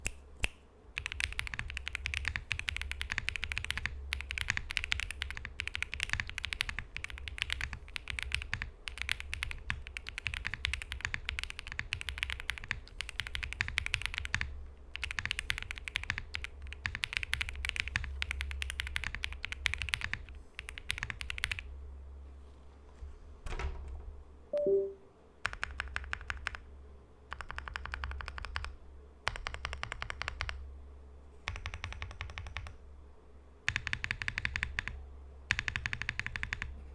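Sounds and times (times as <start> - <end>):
mechanical keyboard typing: 1.0 - 21.7, 24.6 - 26.6, 27.3 - 30.6, 31.4 - 32.8, 33.7 - 36.8
brief pitched sound: 24.6 - 25.0.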